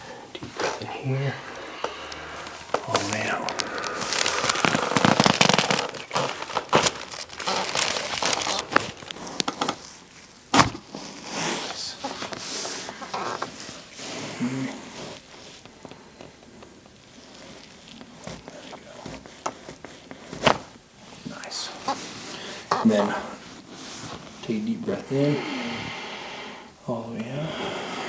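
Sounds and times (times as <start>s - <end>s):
rustling and crinkling: 0.0s - 25.3s
neck joint cracking: 0.3s - 11.0s, 15.6s - 23.2s.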